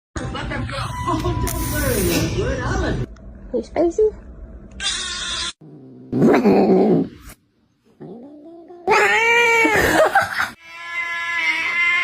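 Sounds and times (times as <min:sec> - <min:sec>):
cat meowing loudly: 0:04.8 - 0:05.6, 0:10.6 - 0:12.0.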